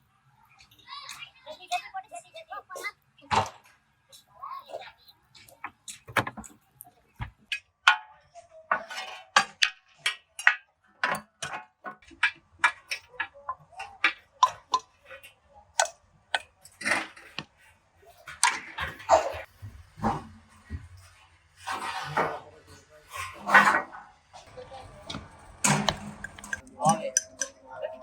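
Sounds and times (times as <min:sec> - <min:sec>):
metal parts knocking and clicking: 0:24.8 - 0:27.6.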